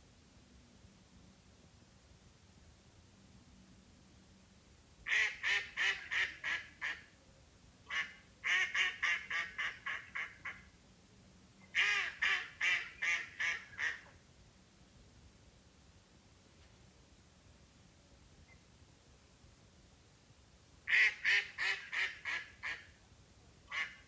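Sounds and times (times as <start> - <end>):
duck quacking rapidly: 5.1 - 7.0, 7.9 - 10.6, 11.7 - 14.1, 20.9 - 22.8, 23.7 - 24.0.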